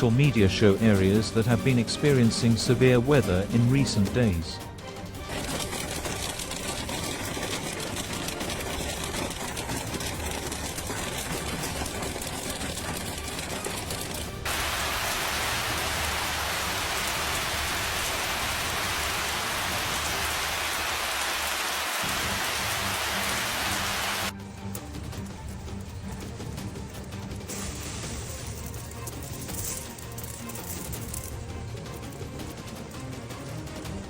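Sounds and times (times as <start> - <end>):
hail and rain pelting: 0.0 - 24.3.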